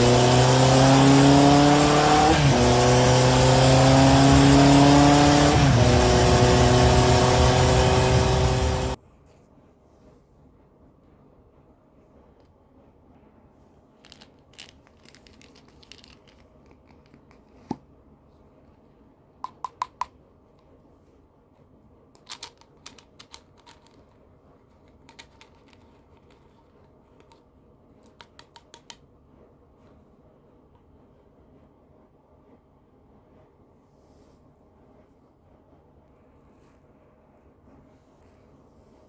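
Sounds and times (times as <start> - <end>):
plastic packaging crinkling: 14.0 - 17.6.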